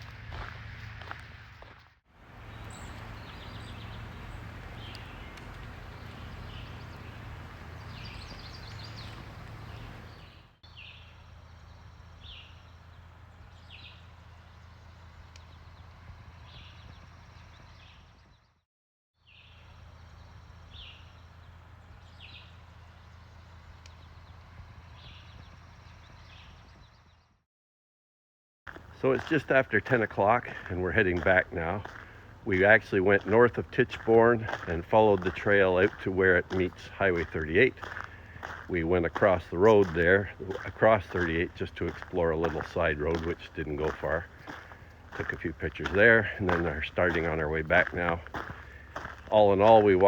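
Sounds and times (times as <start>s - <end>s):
steady low rumble: 0.0s - 10.3s, 28.7s - 50.0s
songbird singing: 0.0s - 18.4s, 19.3s - 27.2s, 28.7s - 50.0s.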